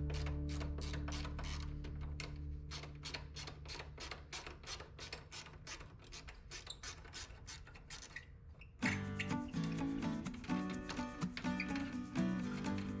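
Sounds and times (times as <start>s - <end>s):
hand tool strokes: 8.8s - 13.0s.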